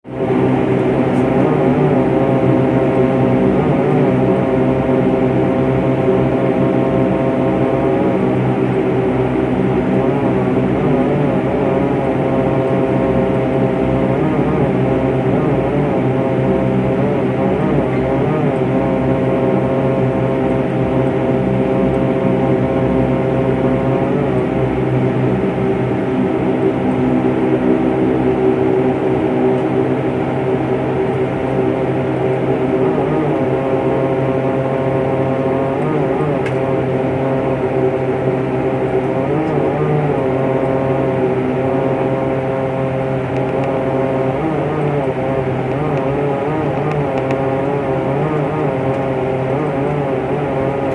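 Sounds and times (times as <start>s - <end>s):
propeller airplane engines droning: 0.0s - 50.9s.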